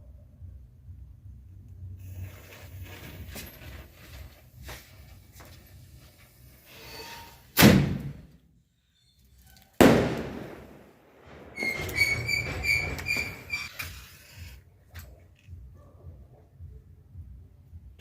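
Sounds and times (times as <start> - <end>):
firecrackers exploding: 9.8 - 14.2.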